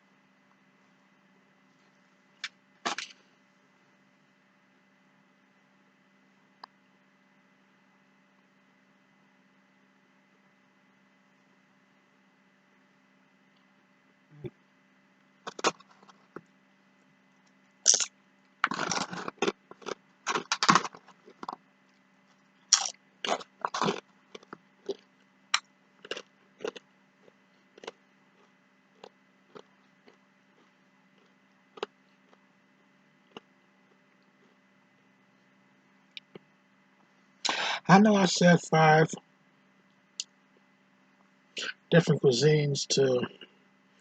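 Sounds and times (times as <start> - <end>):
person chewing food: 15.5 - 16.4, 17.9 - 32.5, 33.2 - 35.1.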